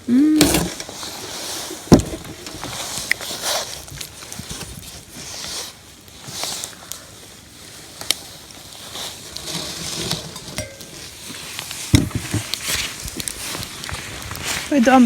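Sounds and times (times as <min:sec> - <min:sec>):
dull thump: 0:01.9 - 0:02.7
spoons clinking against bowls: 0:10.6 - 0:11.1.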